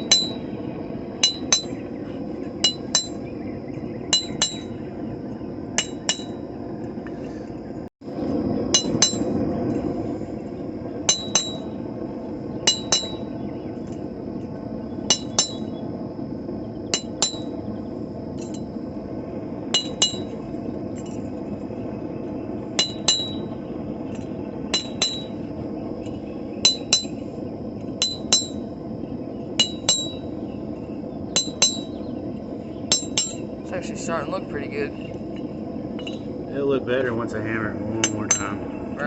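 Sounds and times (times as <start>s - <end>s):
hammer ringing on anvil: 0.0s - 0.4s, 1.2s - 1.8s, 2.6s - 3.2s, 4.1s - 4.7s, 5.8s - 6.4s, 8.7s - 9.3s, 11.1s - 11.7s, 12.7s - 13.2s, 15.1s - 15.7s, 16.9s - 17.5s, 19.8s - 20.3s, 22.8s - 23.5s, 24.7s - 25.4s, 26.6s - 27.2s, 28.0s - 28.6s, 29.6s - 30.3s, 31.4s - 32.0s, 32.9s - 33.5s, 38.0s - 38.6s.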